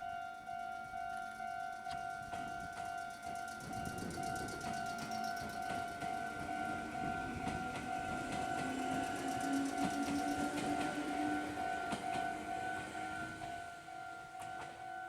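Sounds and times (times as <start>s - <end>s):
level-crossing warning bell: 0.0s - 15.0s
wheels clicking on rails: 1.1s - 13.6s
electric train motor whine: 3.6s - 14.8s.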